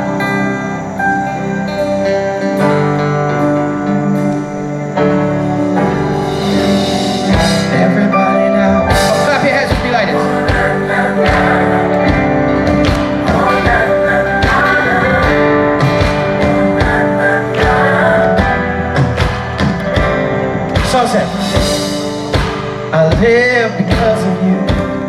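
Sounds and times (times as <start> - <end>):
guitar chords: 0.0 - 25.0
person singing wordless lines: 2.5 - 25.0
drum beat: 6.2 - 8.0, 8.9 - 25.0.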